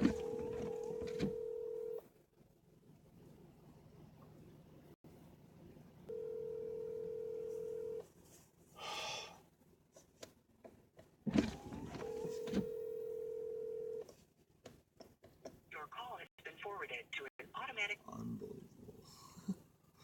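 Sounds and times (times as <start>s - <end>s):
telephone ringback tone: 0.0s - 2.0s, 6.1s - 8.0s, 12.0s - 14.0s.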